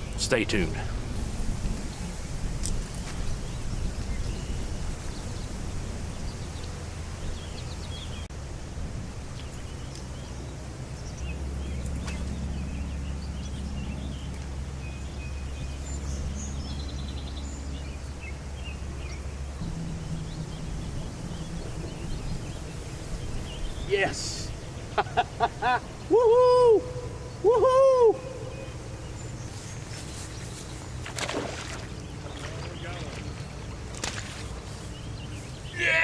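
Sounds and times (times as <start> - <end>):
small birds chirping: 0.0 - 8.3, 9.3 - 36.0
wind buffeting microphone: 0.0 - 35.7.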